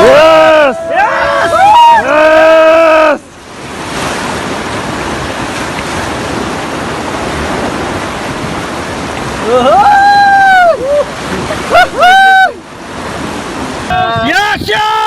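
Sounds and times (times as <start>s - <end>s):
river water rushing: 0.0s - 15.0s.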